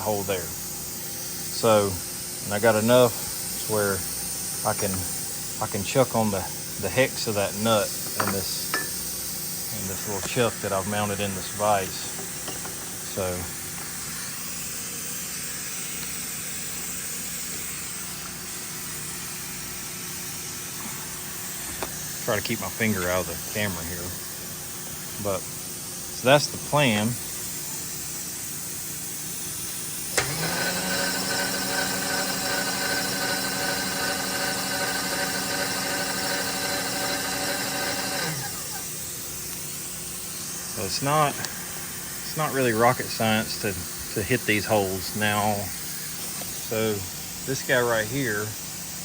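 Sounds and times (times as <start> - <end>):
milling machine spindle whine: 0.0 - 29.3, 30.0 - 49.0
steady background hiss: 39.0 - 49.0.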